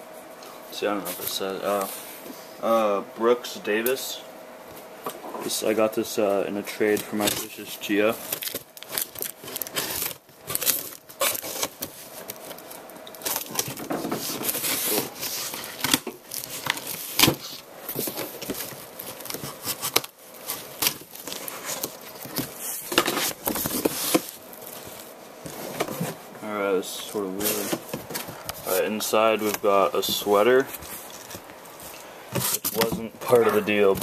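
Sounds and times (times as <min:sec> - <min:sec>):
cardboard crinkling and rustling: 0:06.8 - 0:34.0
packing tape tearing: 0:06.9 - 0:24.9.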